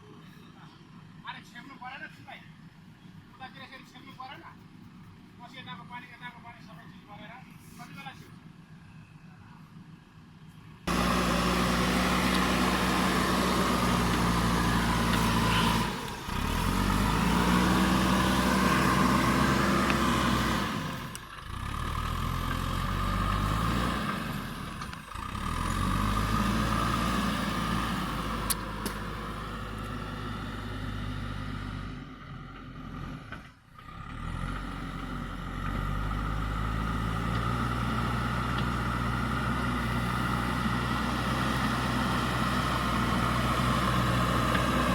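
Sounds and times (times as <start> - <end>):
diesel engine under load: 0.0 - 44.9.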